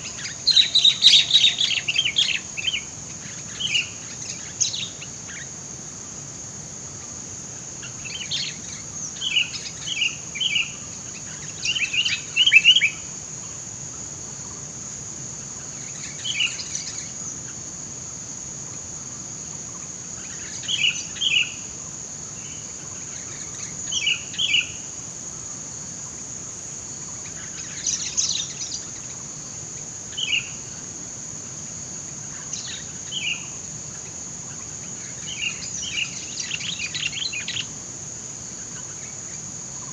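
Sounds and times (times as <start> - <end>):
birds chirping: 0.0 - 5.6
high-pitched insect drone: 0.0 - 39.9.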